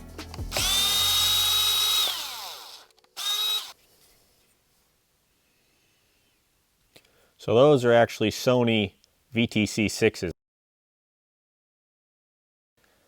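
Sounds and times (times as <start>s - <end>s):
power drill motor whining: 0.5s - 3.8s.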